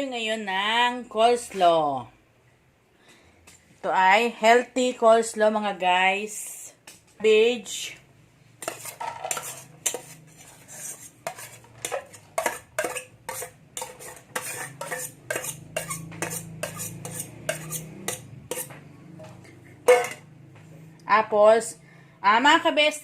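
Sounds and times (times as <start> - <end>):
utensil clinking and scraping a bowl: 8.6 - 20.3.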